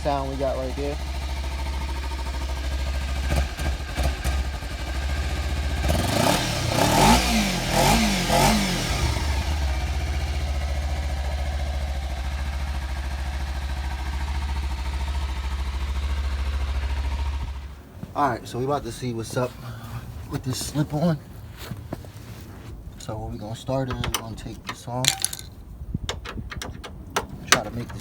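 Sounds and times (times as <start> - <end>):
motorcycle engine idling and revving: 0.0 - 18.0.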